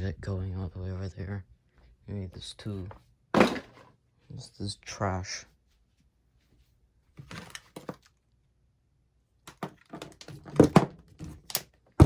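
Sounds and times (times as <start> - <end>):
objects rustling: 2.8 - 3.9
clicks and knocks of handling: 9.4 - 12.0.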